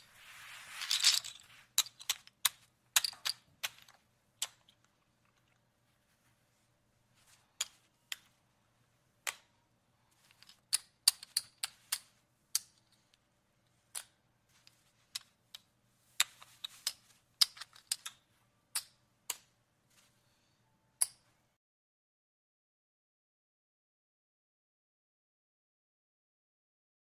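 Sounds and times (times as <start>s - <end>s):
casino chips clicking: 0.8s - 5.6s, 10.2s - 13.0s, 13.9s - 19.5s.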